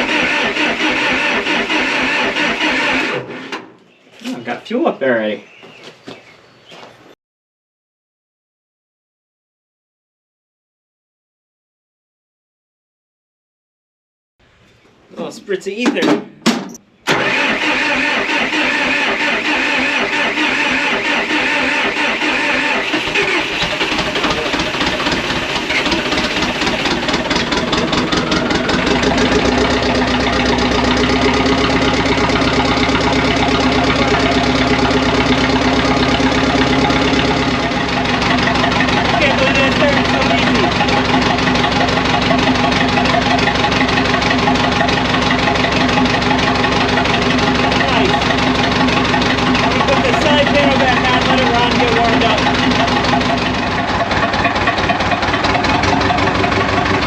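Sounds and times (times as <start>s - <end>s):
diesel engine cold starting: 0.0s - 3.7s, 16.7s - 57.0s.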